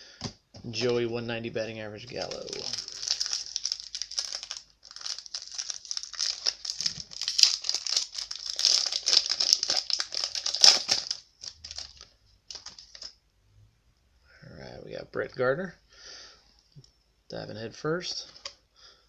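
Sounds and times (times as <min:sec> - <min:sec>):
foil wrapper crinkling: 0:02.0 - 0:13.1.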